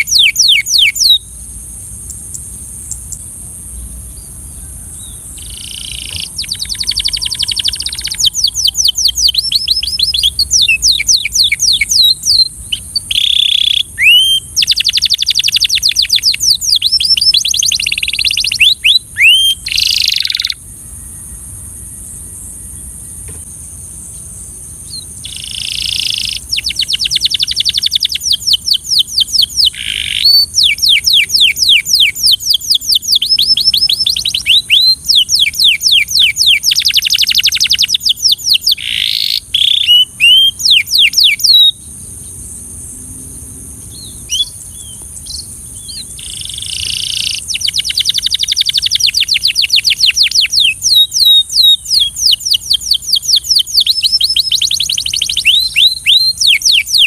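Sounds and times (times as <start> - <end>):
canary singing: 0.0 - 1.4, 2.0 - 21.2, 24.8 - 41.9, 43.8 - 57.0.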